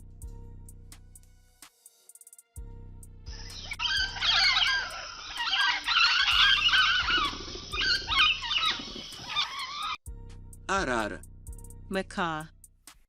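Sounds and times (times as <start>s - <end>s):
parrot squawking: 3.6s - 10.0s.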